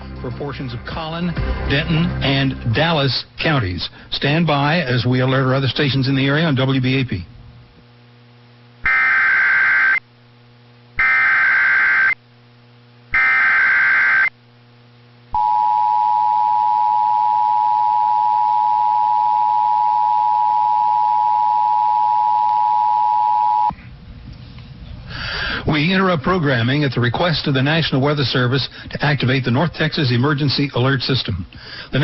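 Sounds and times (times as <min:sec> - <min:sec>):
digital data bursts: 0:11.0 - 0:12.2, 0:13.2 - 0:14.3.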